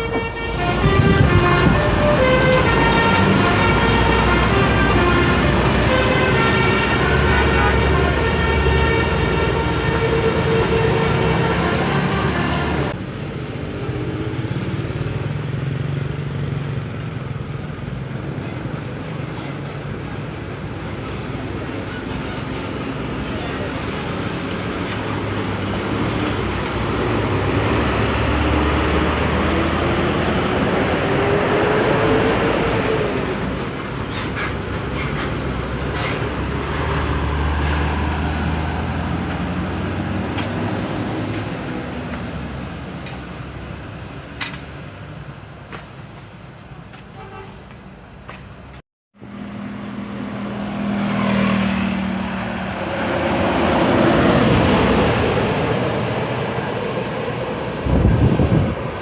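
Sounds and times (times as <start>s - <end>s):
bus engine accelerating: 0.0s - 46.9s, 47.8s - 59.0s
loud bus engine: 0.0s - 59.0s.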